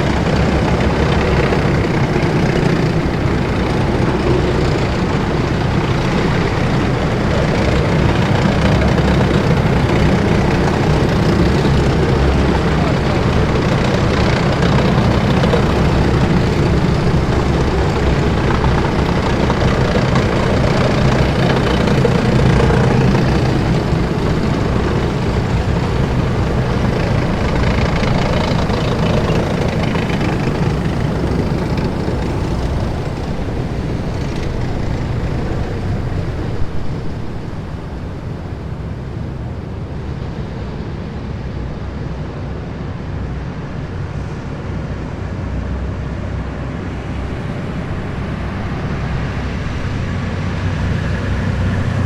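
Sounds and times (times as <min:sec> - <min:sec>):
heavy vehicles rumbling past: 0:00.0 - 0:52.0.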